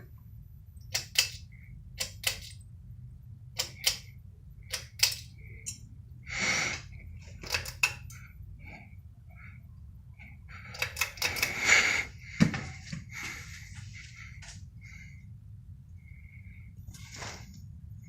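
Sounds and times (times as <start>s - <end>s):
ceiling fan motor hum: 0.0s - 18.0s
sharp clicks: 0.8s - 2.6s, 3.6s - 4.1s.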